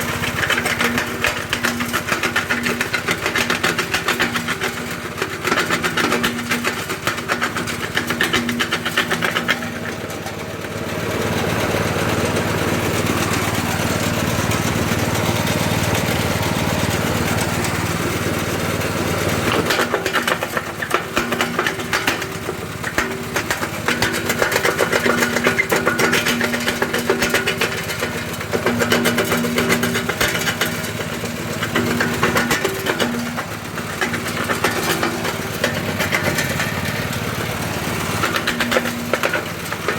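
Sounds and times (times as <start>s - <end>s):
stone crusher running: 0.0s - 39.9s
stones rattling and cracking: 19.5s - 39.9s.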